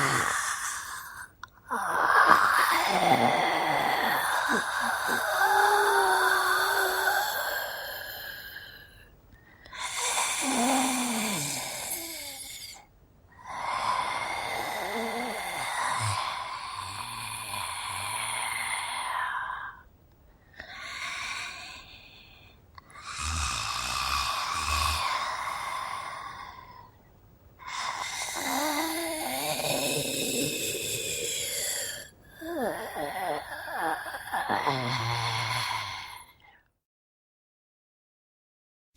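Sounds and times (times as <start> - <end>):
hoarse breathy monster vocalisations: 0.0 - 8.9, 20.6 - 27.0
hoarse breathy groans: 0.0 - 19.9, 20.6 - 27.0, 27.6 - 36.5.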